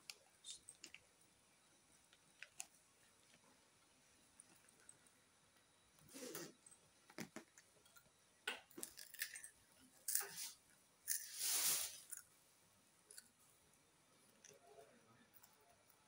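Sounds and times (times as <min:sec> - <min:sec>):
rustling and rubbing: 0:11.2 - 0:12.1.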